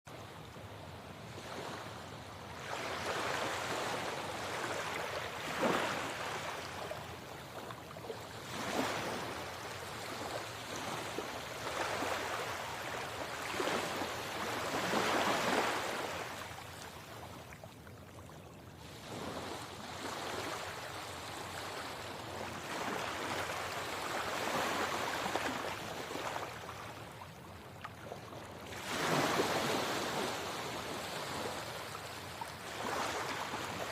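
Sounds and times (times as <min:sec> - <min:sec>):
sea waves washing onto shore: 0:02.5 - 0:17.4, 0:28.7 - 0:33.9.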